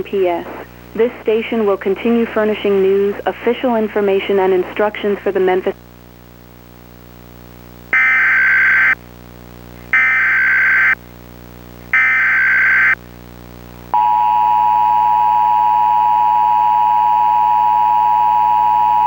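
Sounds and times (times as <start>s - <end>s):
screechy data tone bursts: 8.0s - 9.0s, 9.9s - 11.0s, 11.9s - 13.0s.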